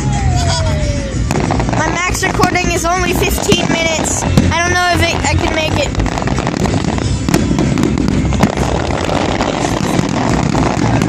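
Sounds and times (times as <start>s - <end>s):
deep rumble: 0.0s - 11.0s
fireworks crackling and popping: 0.0s - 11.0s
sharp firework bangs: 1.2s - 11.0s.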